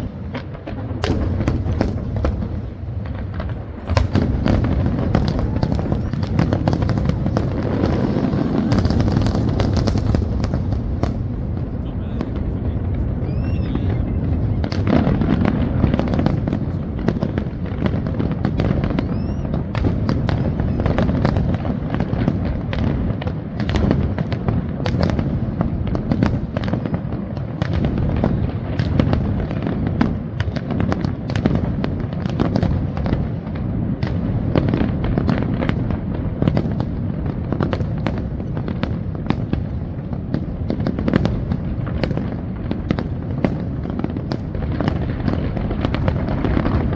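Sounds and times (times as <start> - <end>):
fireworks bursting and crackling: 0.0 - 46.9
low rumble: 1.0 - 14.7.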